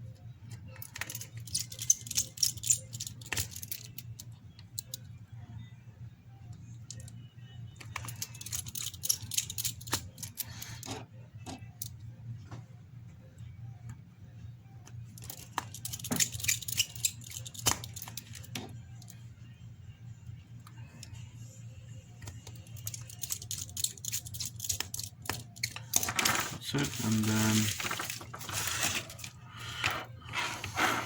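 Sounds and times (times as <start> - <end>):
small metal tools clicking: 0.5 - 5.0, 7.8 - 10.9, 15.2 - 19.2, 22.2 - 26.3.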